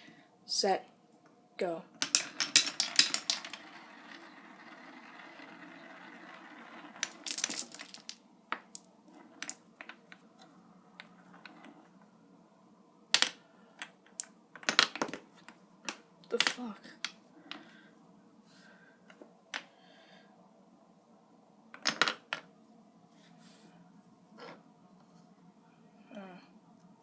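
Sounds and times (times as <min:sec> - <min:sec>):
marble clacking and knocking: 0:02.0 - 0:12.0, 0:13.1 - 0:17.6, 0:21.8 - 0:22.5
marble rolling on wooden track: 0:02.0 - 0:12.1, 0:13.1 - 0:17.6, 0:21.8 - 0:22.5, 0:24.4 - 0:24.6.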